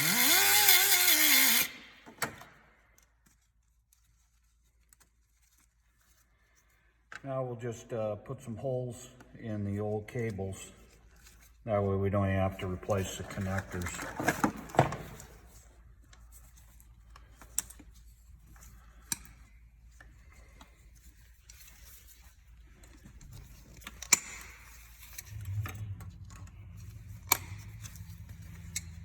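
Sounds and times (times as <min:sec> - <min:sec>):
low hum: 0:25.0 - 0:29.0
tools clicking and clinking: 0:27.1 - 0:29.0.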